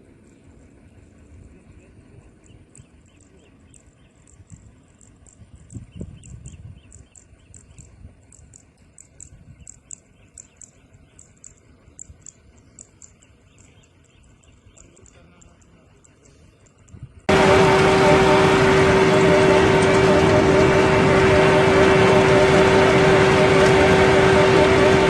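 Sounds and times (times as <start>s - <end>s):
low rumble: 17.1s - 25.0s.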